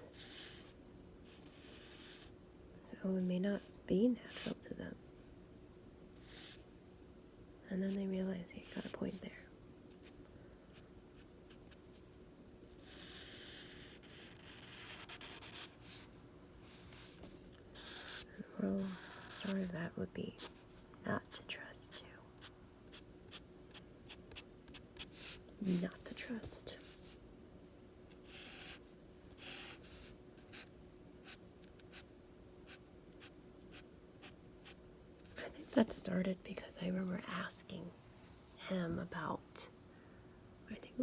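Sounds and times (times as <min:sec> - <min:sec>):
pencil strokes scratching on paper: 0:12.8 - 0:20.6.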